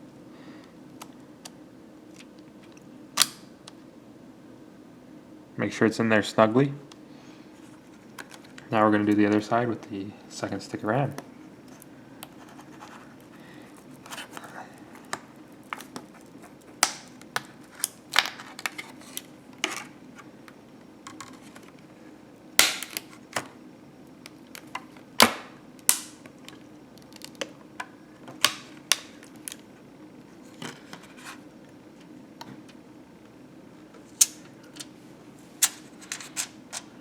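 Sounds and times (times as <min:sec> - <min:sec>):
faint steady hum: 0:00.0 - 0:37.0
plastic snaps: 0:24.5 - 0:29.6.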